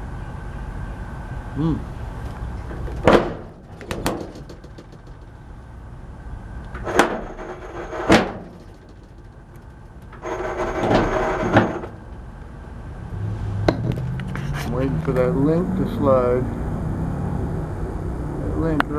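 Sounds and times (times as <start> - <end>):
metallic scraping and rattling: 6.7 - 12.2
metal chain clanking: 6.8 - 12.0.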